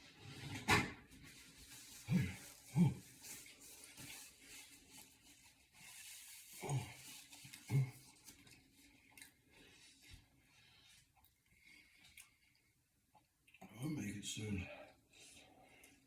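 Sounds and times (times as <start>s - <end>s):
man grunting: 2.1s - 3.0s.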